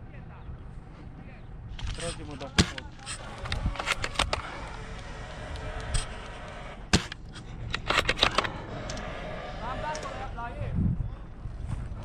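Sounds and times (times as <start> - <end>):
airsoft gunfire cracks: 2.5 - 3.0, 6.9 - 7.2.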